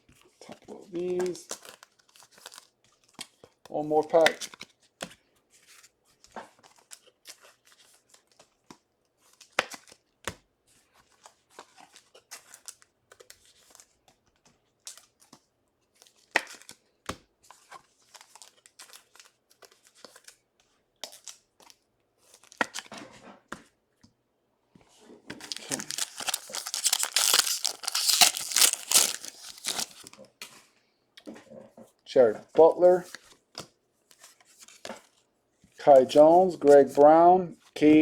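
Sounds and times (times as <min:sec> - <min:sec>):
foil wrapper tearing and crinkling: 0:25.4 - 0:30.1.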